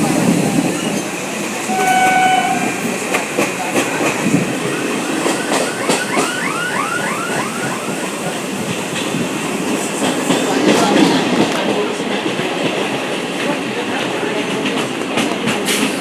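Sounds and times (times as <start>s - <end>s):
train wheels clicking over rail joints: 8.6s - 16.0s.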